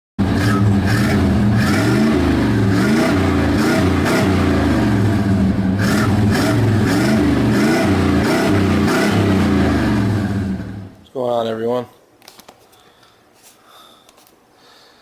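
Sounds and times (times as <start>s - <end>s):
vehicle engine revving: 0.2s - 11.0s.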